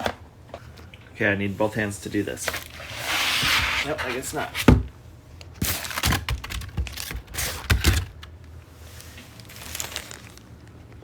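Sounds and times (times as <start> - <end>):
box and packing being handled: 2.3 - 4.9, 5.6 - 10.6.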